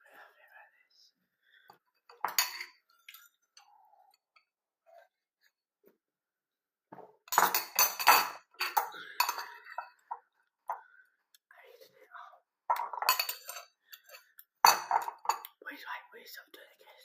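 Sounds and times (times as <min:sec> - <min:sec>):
spoon clinking against bowl: 0:12.7 - 0:15.5.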